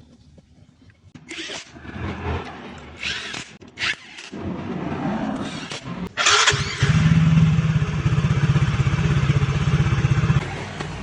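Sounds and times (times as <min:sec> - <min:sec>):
scooter engine starting and idling: 0:06.1 - 0:11.0.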